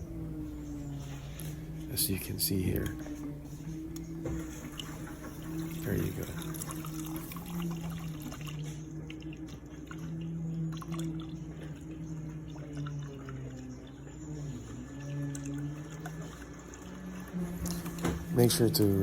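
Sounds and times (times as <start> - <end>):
steady low hum: 0.0 - 19.0
water stream into container: 4.3 - 19.0.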